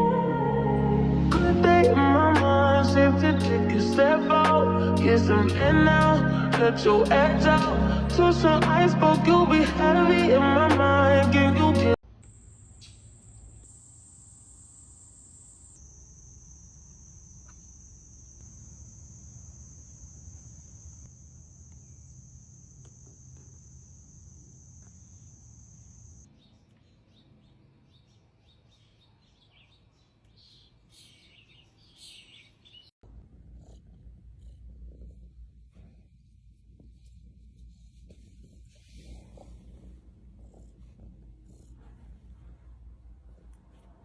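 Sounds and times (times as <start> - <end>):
thin high whine: 12.1 - 19.5
cat purring: 33.0 - 44.0.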